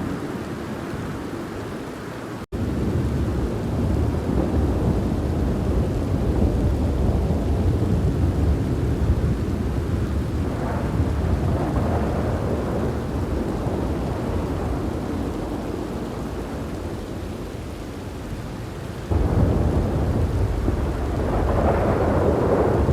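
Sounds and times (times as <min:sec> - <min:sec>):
heavy rain hissing: 0:00.0 - 0:22.9
rolling thunder: 0:02.6 - 0:22.9.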